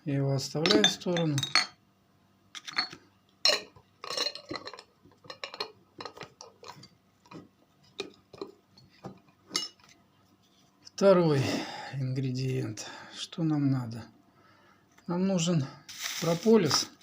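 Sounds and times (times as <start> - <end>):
glass and kitchenware clinking: 0.6 - 1.8, 2.6 - 9.9.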